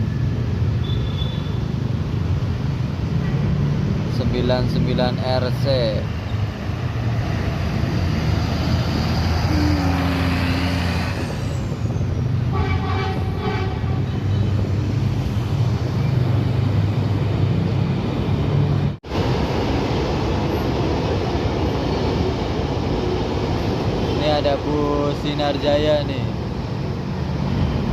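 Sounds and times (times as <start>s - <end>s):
bus horn: 12.5s - 14.4s.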